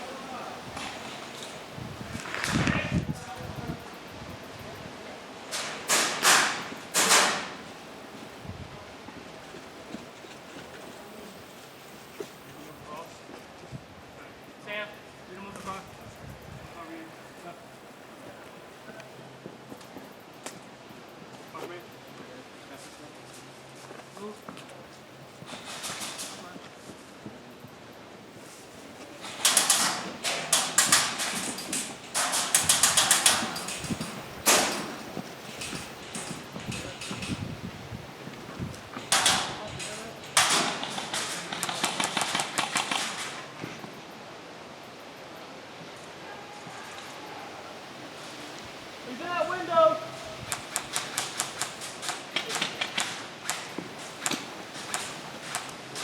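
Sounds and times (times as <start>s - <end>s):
loud gun crack: 5.6s - 7.6s, 29.2s - 35.2s, 39.1s - 43.4s
airsoft gun bursts of clicks: 40.4s - 43.4s, 50.5s - 55.8s.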